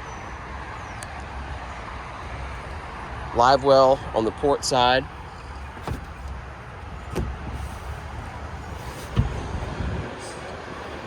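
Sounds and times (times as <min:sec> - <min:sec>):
low background rumble: 0:02.2 - 0:11.0.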